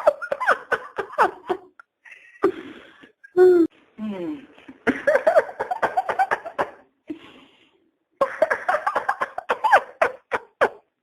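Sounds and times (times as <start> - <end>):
man laughing hard: 8.2 - 10.8.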